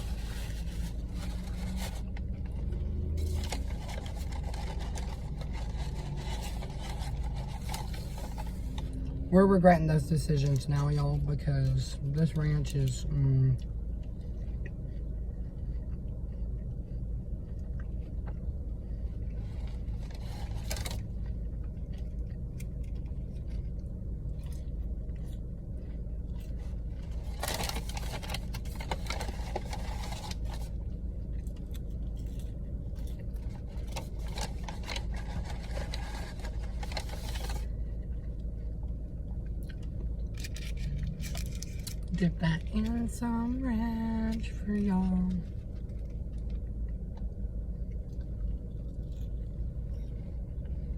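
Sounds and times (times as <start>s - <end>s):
paper wrappers crinkling: 0.0s - 8.9s, 19.4s - 21.1s, 26.4s - 30.8s, 31.5s - 37.7s, 40.3s - 43.1s
low hum: 0.0s - 50.9s
chewing: 19.2s - 27.7s.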